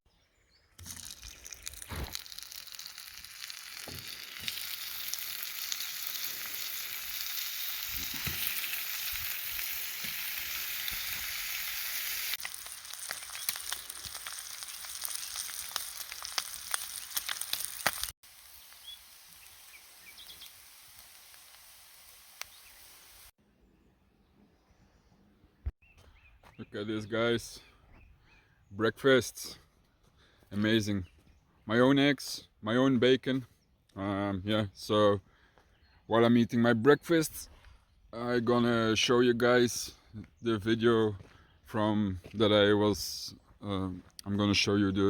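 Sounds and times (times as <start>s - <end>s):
bacon and eggs sizzling in a pan: 0.8s - 23.3s.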